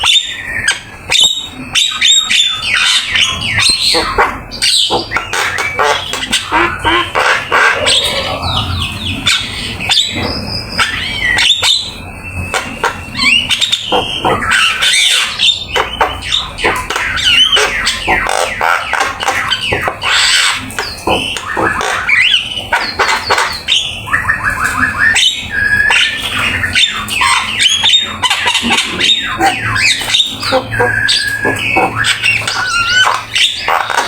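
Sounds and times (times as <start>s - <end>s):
bird singing harsh squawks and whistles: 0.0s - 34.0s.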